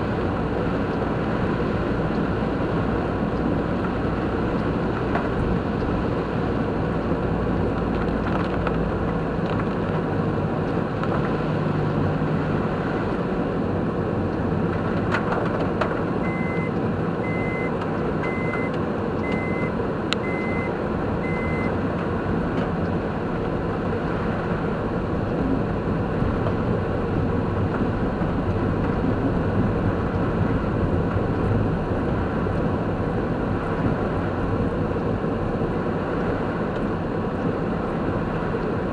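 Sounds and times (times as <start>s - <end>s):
car road and engine noise: 0.0s - 38.9s
short high beeps: 16.2s - 21.7s.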